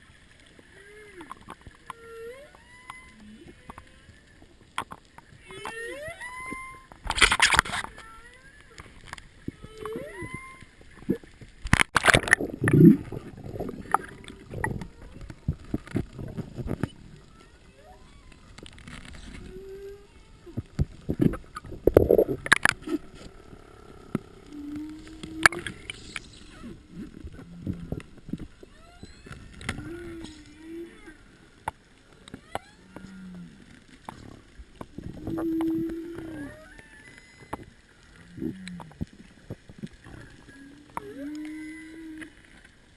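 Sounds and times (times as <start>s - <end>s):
bursts of water noise: 0.0s - 42.9s
whale song moans and whoops: 0.7s - 4.2s, 5.4s - 7.0s, 7.8s - 11.2s, 17.3s - 18.5s, 19.2s - 20.7s, 22.2s - 28.0s, 28.6s - 31.5s, 32.2s - 33.7s, 34.9s - 39.0s, 40.0s - 42.6s.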